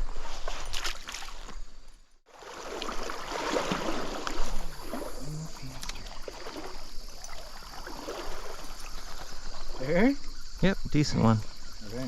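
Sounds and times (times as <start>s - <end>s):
stream water sloshing and trickling: 0.0s - 11.9s
water splash: 2.3s - 9.8s.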